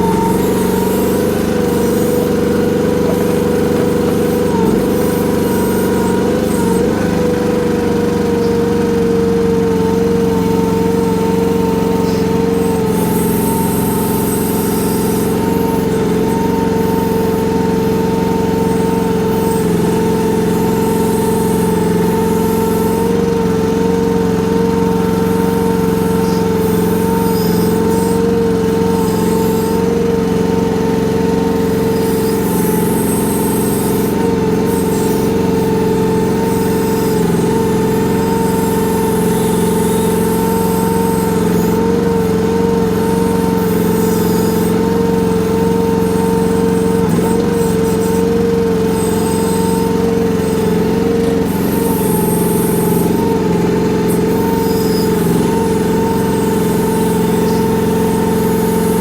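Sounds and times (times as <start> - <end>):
mini excavator engine whine: 0.0 - 59.0.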